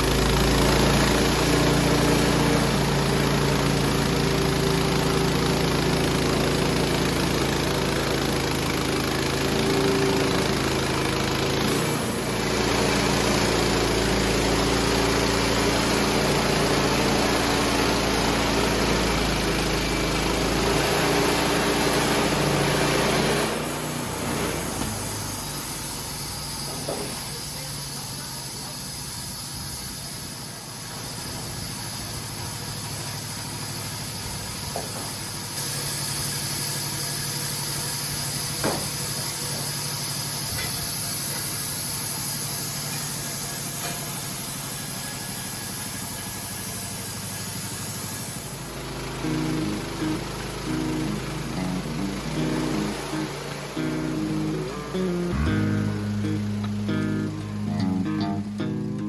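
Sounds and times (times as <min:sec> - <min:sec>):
engine idling: 0:00.0 - 0:59.0
steady hiss: 0:24.9 - 0:59.0.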